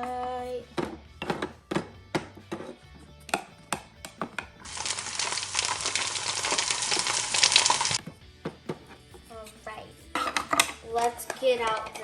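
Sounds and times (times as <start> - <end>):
toy stove sizzling hiss: 4.6 - 8.0.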